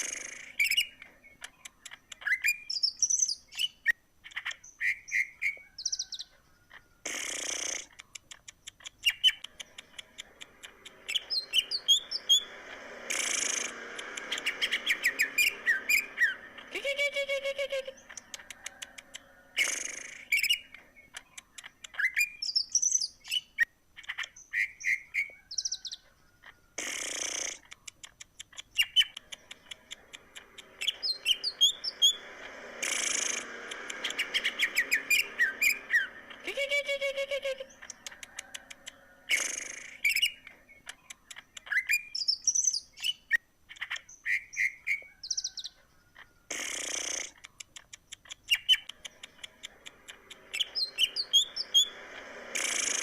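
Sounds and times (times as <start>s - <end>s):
bird singing: 0.0s - 53.0s
harsh rasping bird notes: 9.2s - 20.6s, 28.7s - 40.4s, 48.4s - 53.0s.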